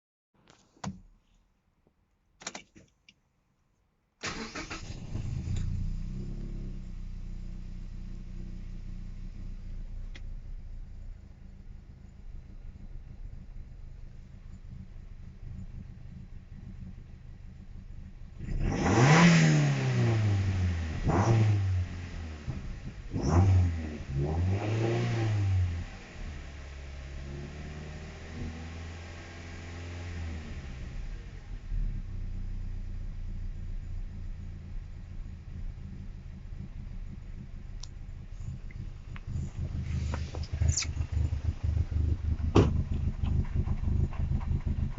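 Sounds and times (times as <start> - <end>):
car engine rough idle: 4.3 - 18.7, 30.8 - 44.9.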